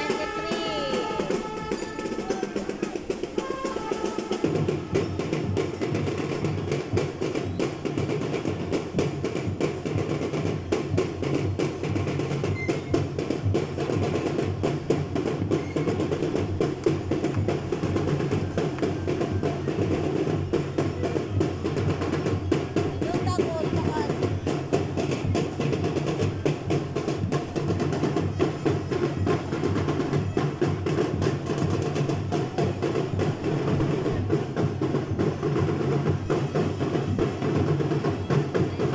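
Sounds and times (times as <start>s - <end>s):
drum section beating fast rhythm: 0.0s - 38.9s.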